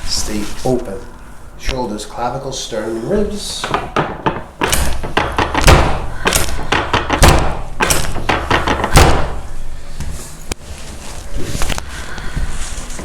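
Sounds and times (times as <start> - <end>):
heavy thumps: 3.2 - 10.2.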